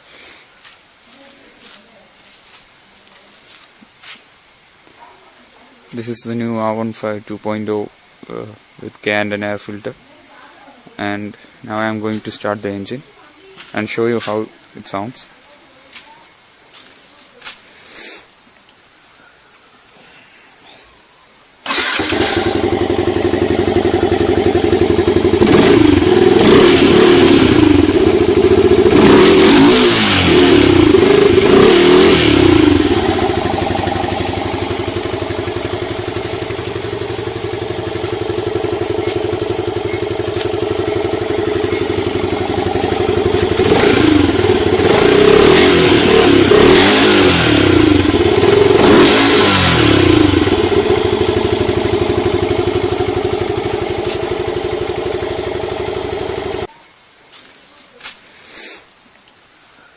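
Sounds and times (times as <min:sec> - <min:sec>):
motorcycle engine revving: 0:21.6 - 0:56.7.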